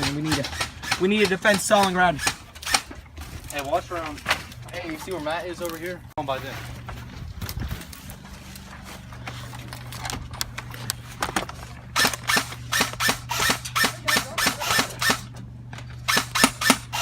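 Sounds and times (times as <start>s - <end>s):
airsoft guns firing: 0.0s - 2.9s, 12.0s - 15.3s, 16.1s - 17.0s.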